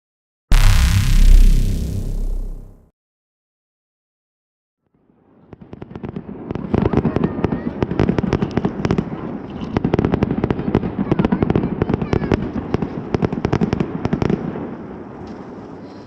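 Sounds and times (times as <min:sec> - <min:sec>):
fireworks bangs and crackles: 0:05.2 - 0:15.9.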